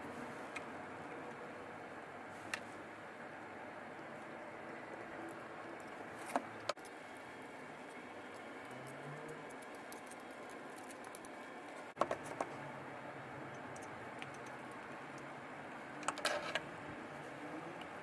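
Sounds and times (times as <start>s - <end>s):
small parts clicking and tapping: 6.6s - 11.4s, 13.5s - 15.3s.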